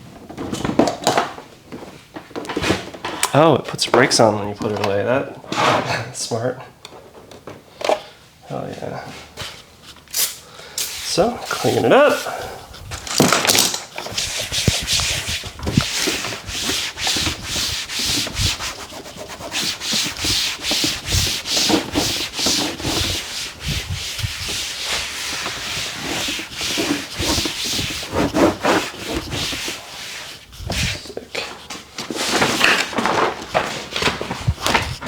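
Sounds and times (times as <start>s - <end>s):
wiping strokes on panel: 10.8s - 12.9s, 14.1s - 31.0s.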